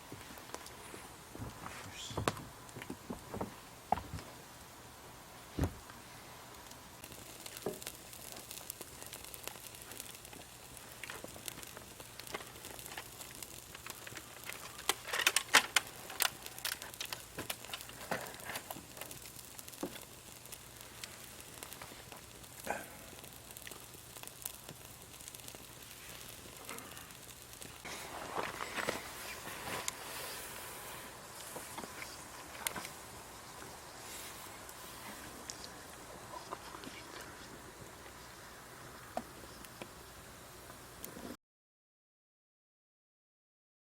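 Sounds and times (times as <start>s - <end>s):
wood fire crackling: 0.0s - 41.4s
sharp pops: 6.6s - 30.0s.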